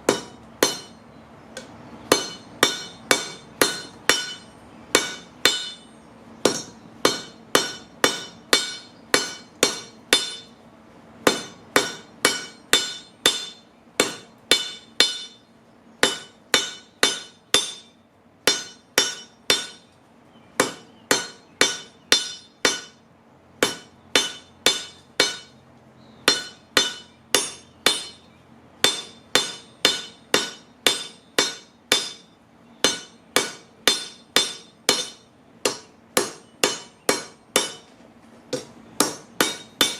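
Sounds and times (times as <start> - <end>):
hammer striking metal spike: 0.1 - 1.0, 1.6 - 10.5, 11.3 - 15.4, 16.0 - 17.9, 18.5 - 19.8, 20.6 - 23.0, 23.6 - 25.5, 26.3 - 37.9, 38.5 - 39.9.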